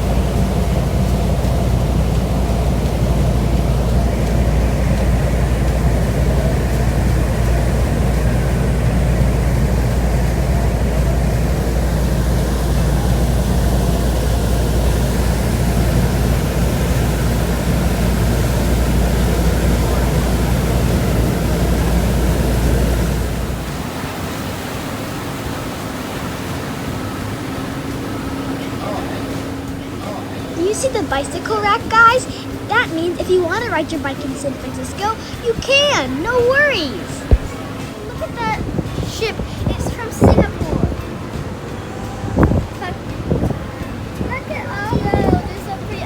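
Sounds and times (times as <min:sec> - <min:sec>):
ferry engine rumble: 0:00.0 - 0:46.0
wind on microphone: 0:37.0 - 0:37.7, 0:38.3 - 0:41.3, 0:42.2 - 0:46.0.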